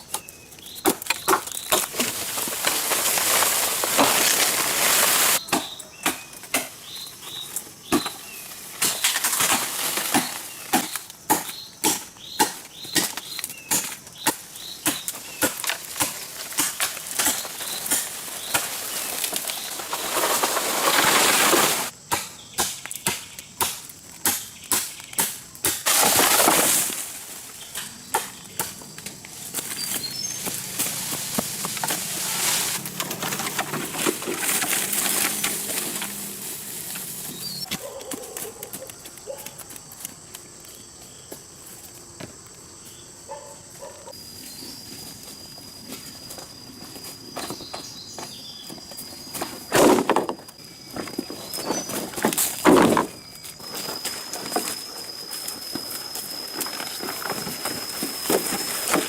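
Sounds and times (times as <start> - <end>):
straw rustling: 0.6 - 5.4, 14.6 - 21.9, 29.2 - 38.6.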